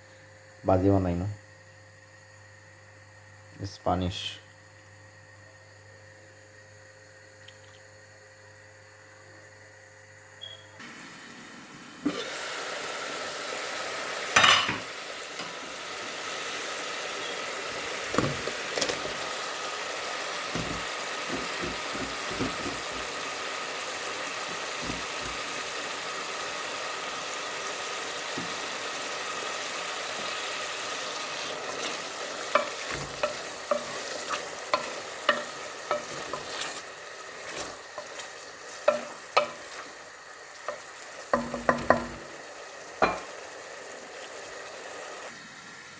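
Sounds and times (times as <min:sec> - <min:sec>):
spinach sizzling in a pan: 0:08.9 - 0:45.9
spatula scraping a pan: 0:31.1 - 0:40.0.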